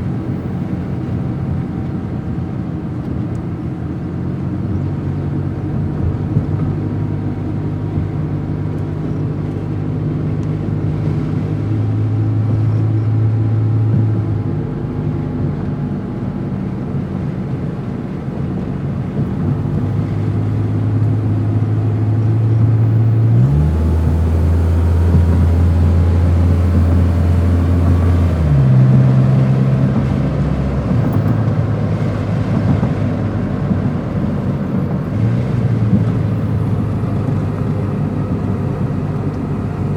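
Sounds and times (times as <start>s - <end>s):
car engine revving: 19.1s - 39.9s.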